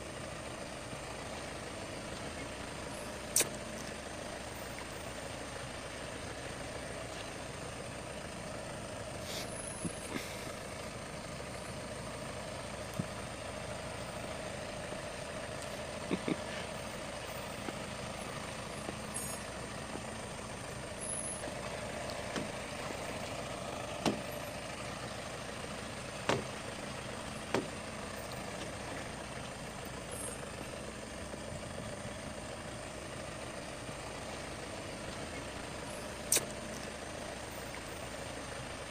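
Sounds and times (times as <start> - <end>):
heavy vehicle engine running: 0.0 - 38.9
sharp knocks: 26.3 - 26.6.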